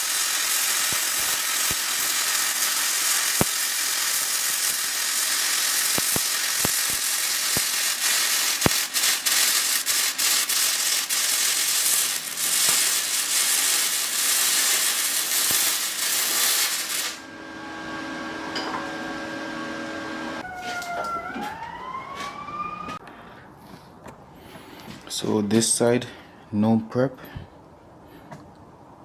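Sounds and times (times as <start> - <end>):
spatter popping: 0.0 - 17.2
welding arc hissing and crackling: 0.0 - 20.4
welder hum: 0.0 - 23.0.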